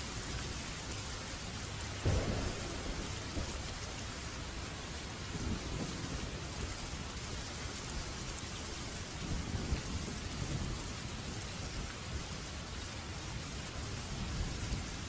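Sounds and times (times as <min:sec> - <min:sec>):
rain hissing: 0:00.0 - 0:15.0
low rumble of thunder: 0:02.0 - 0:12.6.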